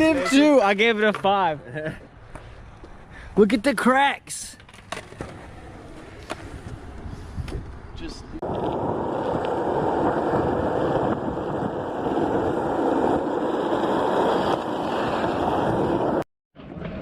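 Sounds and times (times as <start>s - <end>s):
wind buffeting microphone: 6.4s - 14.5s.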